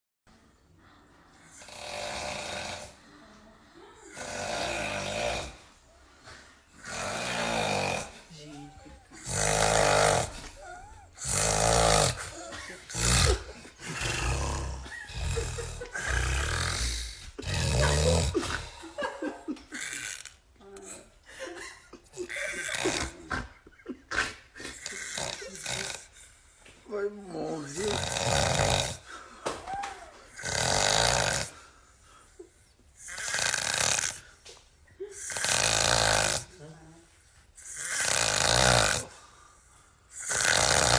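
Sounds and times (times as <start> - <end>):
heavy rattling snores: 1.4 - 3.0, 4.1 - 5.8, 6.7 - 19.0, 19.7 - 20.4, 22.2 - 23.5, 24.1 - 26.4, 27.4 - 29.1, 30.3 - 31.7, 33.0 - 34.4, 35.1 - 36.7, 37.6 - 40.9.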